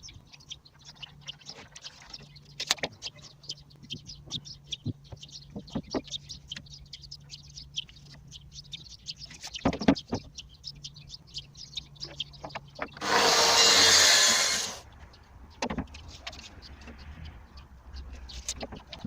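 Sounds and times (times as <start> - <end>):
birds chirping: 0.0 - 19.0
power tool running: 13.0 - 14.8
knocks of wood or tools: 15.6 - 16.0.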